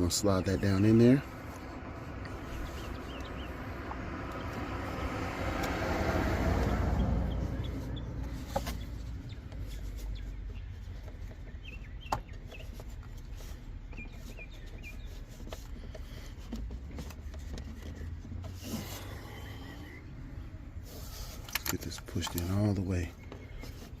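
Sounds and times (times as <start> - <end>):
rubbing and handling noises: 0.0 - 5.8, 6.5 - 24.0.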